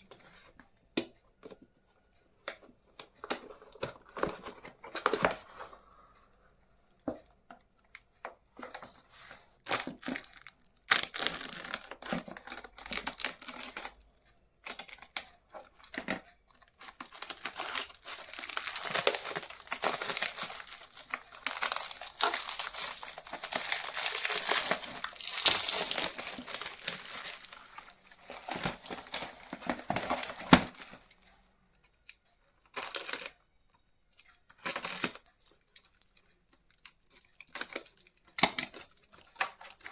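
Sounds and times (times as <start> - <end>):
packaging crinkling and tearing: 9.6 - 14.0, 16.8 - 31.2, 32.6 - 33.4, 34.6 - 35.3.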